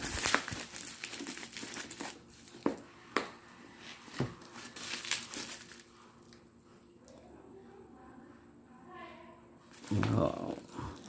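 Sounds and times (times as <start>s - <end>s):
packaging crinkling and snapping: 0.0s - 2.7s, 4.2s - 6.4s, 9.8s - 11.0s.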